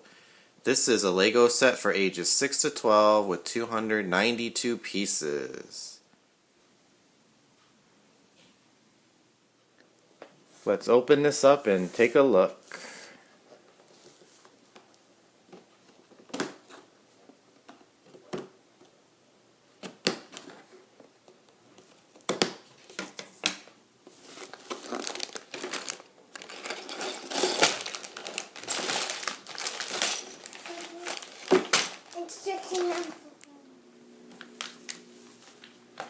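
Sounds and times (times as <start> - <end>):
plastic packaging crinkling: 24.2 - 33.3, 34.3 - 36.0.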